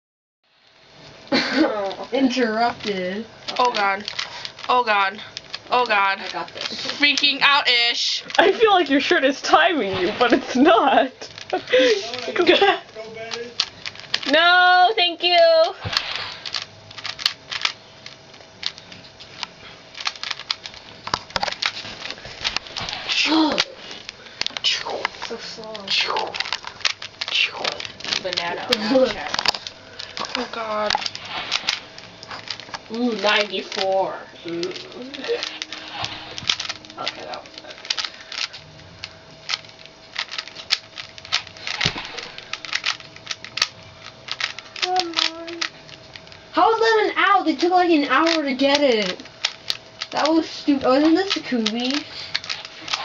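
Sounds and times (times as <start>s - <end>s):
puzzle cube layers clicking: 44.3s - 45.7s.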